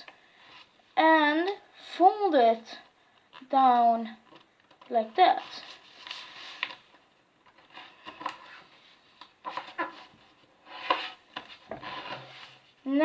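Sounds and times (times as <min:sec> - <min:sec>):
paper crinkling and rustling: 0:05.3 - 0:12.6.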